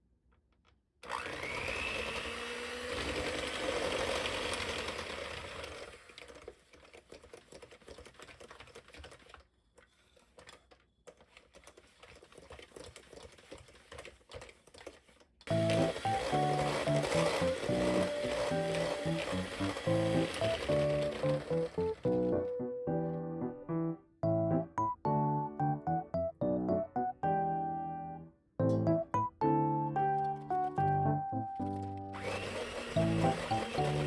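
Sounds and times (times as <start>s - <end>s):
clicking and handling sounds: 0.2s - 1.5s, 5.6s - 22.5s
small electric motor whining: 1.0s - 6.4s, 15.5s - 22.3s, 32.1s - 34.0s.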